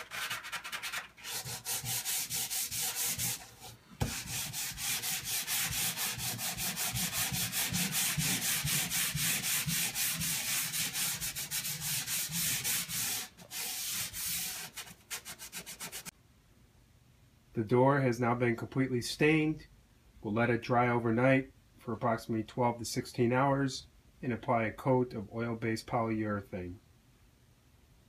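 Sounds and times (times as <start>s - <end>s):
sandpaper scratching on wood: 0.0s - 16.1s.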